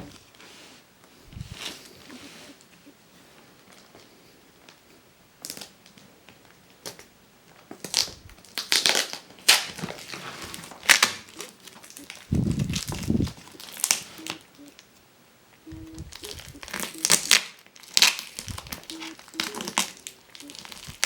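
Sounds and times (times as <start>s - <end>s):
packaging crinkling and rustling: 5.4s - 14.8s, 16.1s - 21.0s.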